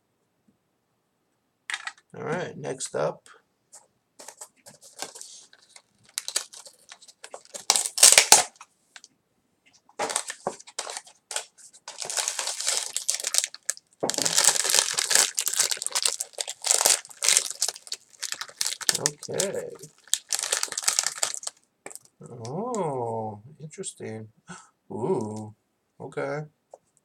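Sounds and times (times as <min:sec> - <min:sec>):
packaging tearing and crinkling: 0:04.8 - 0:08.6, 0:10.0 - 0:22.1.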